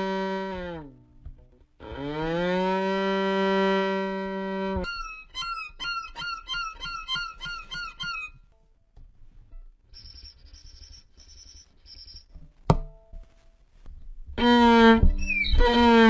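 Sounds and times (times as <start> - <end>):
short high squeaky animal calls: 4.8 - 8.4, 9.9 - 12.3, 15.1 - 16.0.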